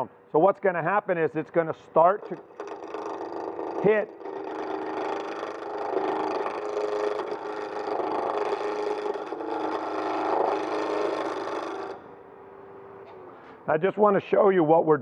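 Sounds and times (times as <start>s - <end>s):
chisel cutting wood on lathe: 2.0s - 12.1s
lathe humming: 2.0s - 12.3s.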